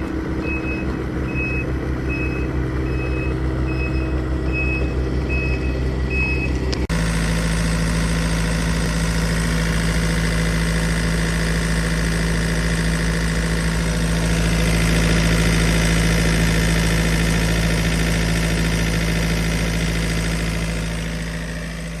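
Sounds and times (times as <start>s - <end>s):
diesel engine running: 0.0s - 22.0s
high alarm beeping: 0.4s - 6.5s.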